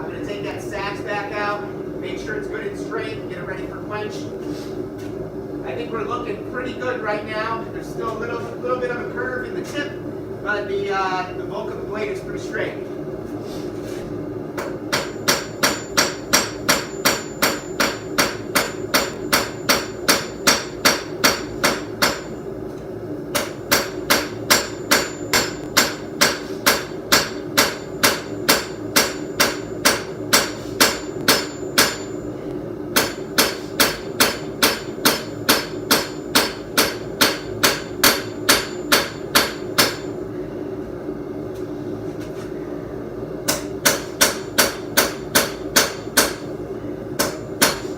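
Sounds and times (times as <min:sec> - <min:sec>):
steady hum: 0:00.0 - 0:47.9
hammer striking steel on anvil: 0:14.6 - 0:22.4, 0:23.3 - 0:32.2, 0:32.9 - 0:40.1, 0:43.5 - 0:46.5, 0:47.2 - 0:47.9.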